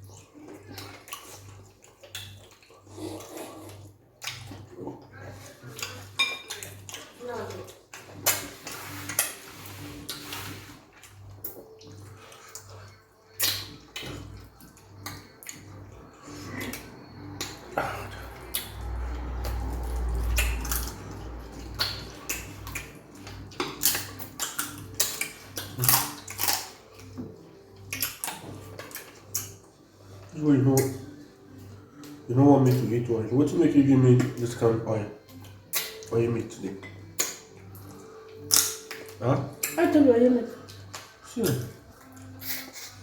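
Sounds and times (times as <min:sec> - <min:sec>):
wet mouth eating sounds: 0:00.0 - 0:32.8, 0:35.2 - 0:36.1, 0:36.9 - 0:39.9, 0:40.5 - 0:43.0
dishes clinking: 0:05.7 - 0:06.8.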